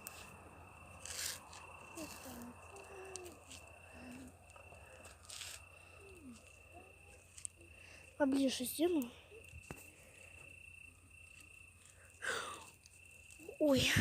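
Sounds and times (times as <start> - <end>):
insect trill: 0.0 - 14.0.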